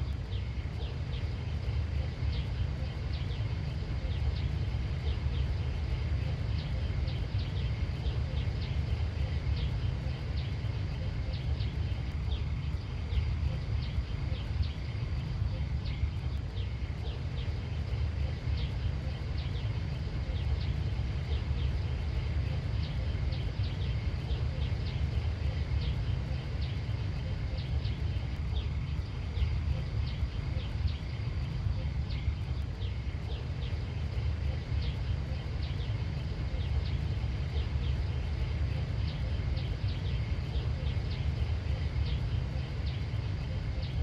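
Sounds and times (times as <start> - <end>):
steady low rumble: 0.0 - 44.0.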